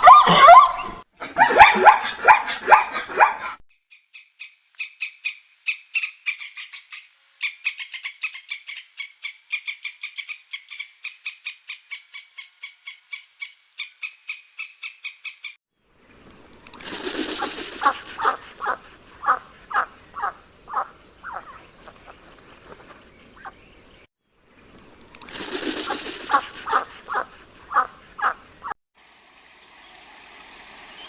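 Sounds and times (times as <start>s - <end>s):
loud wavering animal calls: 17.2s - 21.7s, 26.3s - 28.4s.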